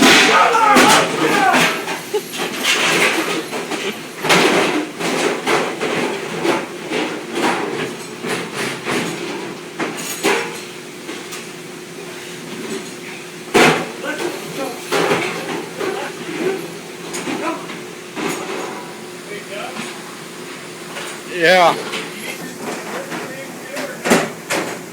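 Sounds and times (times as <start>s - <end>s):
dishes clattering: 0.0s - 9.3s.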